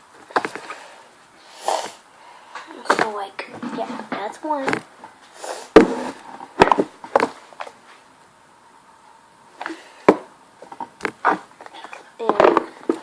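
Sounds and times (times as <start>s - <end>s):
handling noise: 2.7s - 8.1s, 9.6s - 13.0s.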